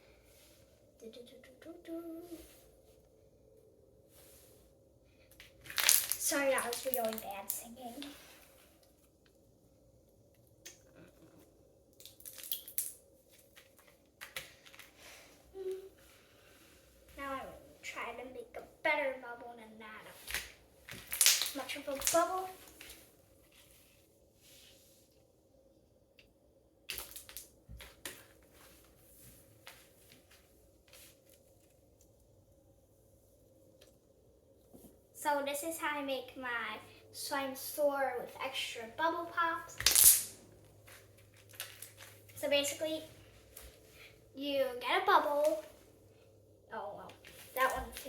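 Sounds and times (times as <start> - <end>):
slime crackling and popping: 5.6 - 8.0, 12.0 - 13.0, 20.3 - 22.4, 26.9 - 28.2, 39.8 - 40.3.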